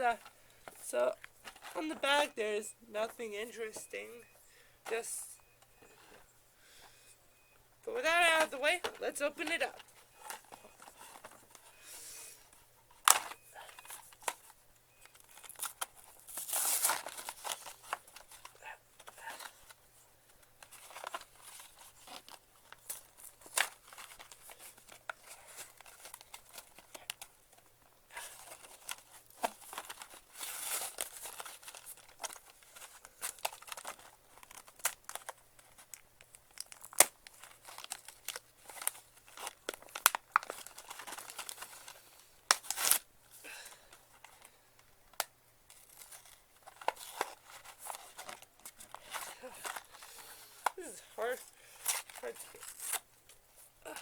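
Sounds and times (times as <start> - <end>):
cardboard and plastic tearing: 15.1 - 19.8, 20.6 - 44.5, 45.1 - 53.1
packaging clicks and snaps: 20.4 - 50.8.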